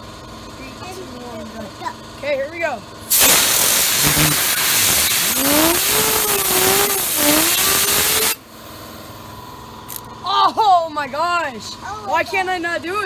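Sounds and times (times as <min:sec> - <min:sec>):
compressed air hissing from nozzle: 0:03.1 - 0:08.4
fidget spinner whirring: 0:03.1 - 0:08.4.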